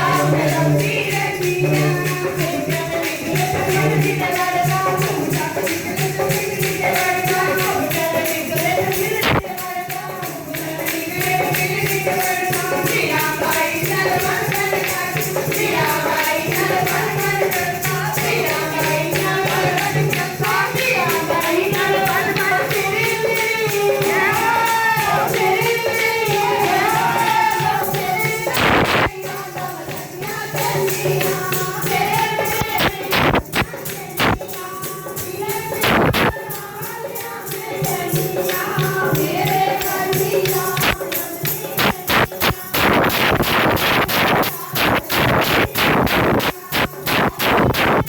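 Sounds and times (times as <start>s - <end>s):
hand percussion beat: 0.0s - 48.0s
voices singing a chant: 0.0s - 48.0s
rushing noise burst: 28.6s - 29.1s, 32.8s - 34.4s, 35.8s - 36.3s, 41.8s - 48.0s.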